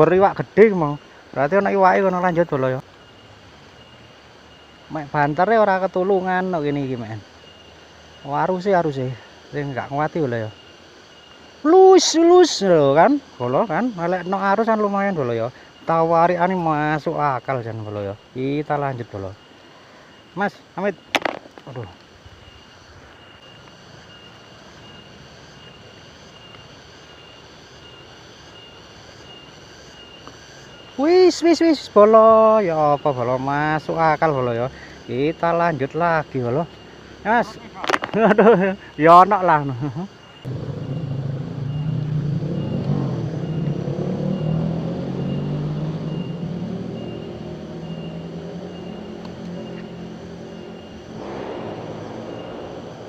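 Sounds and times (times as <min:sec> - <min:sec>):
high insect trill: 0:00.0 - 0:53.0
faint high chirp: 0:40.2 - 0:53.0
motor engine running: 0:40.5 - 0:53.0.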